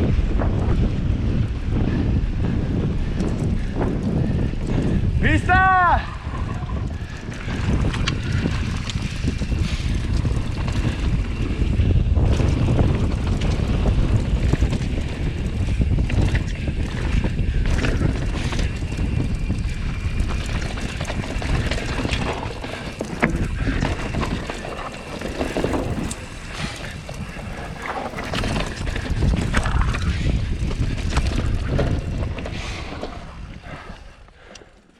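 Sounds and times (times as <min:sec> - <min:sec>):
wind buffeting microphone: 0:00.0 - 0:34.8
bike tyres rumbling on dirt: 0:00.0 - 0:34.9
bike rattling clicks and knocks: 0:06.2 - 0:33.6.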